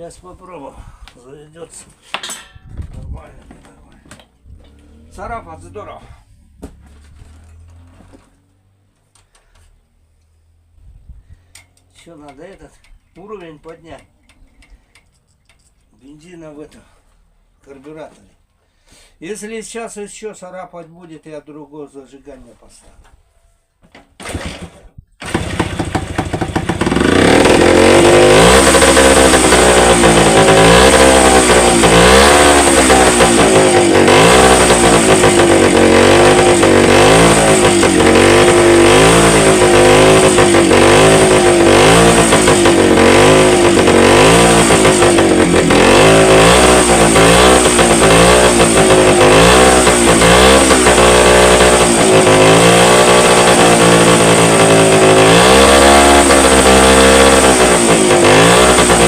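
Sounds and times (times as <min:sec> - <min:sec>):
motorcycle engine revving: 0:02.9 - 0:09.0, 0:24.2 - 0:59.0.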